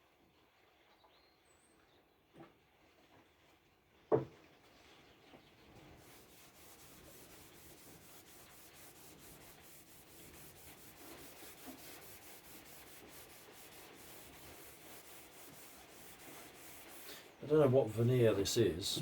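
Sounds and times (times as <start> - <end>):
hand rubbing on wood: 6.0 - 19.0.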